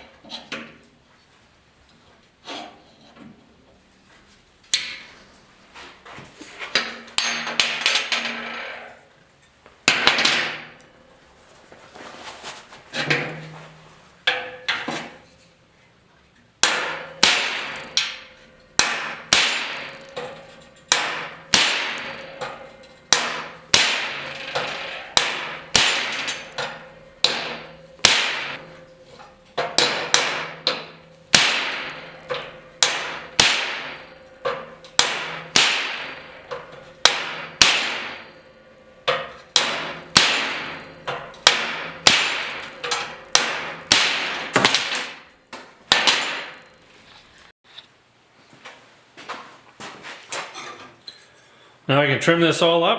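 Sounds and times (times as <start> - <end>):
hammer striking steel: 6.8 - 8.6, 9.8 - 10.9, 16.6 - 46.8.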